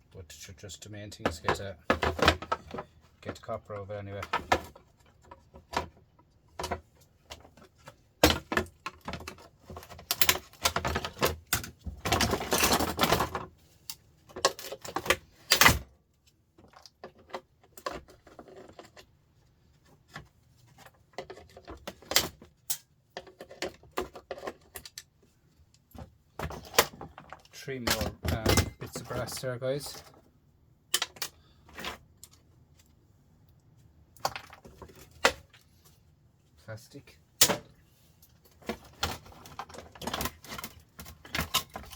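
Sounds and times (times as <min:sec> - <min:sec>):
parts rattling: 0:25.9 - 0:30.3.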